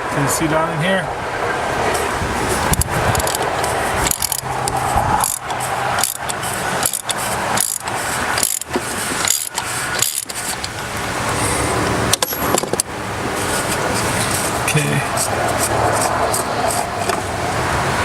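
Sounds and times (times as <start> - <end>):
socket ratchet clicking: 2.6 - 11.0, 12.1 - 12.9.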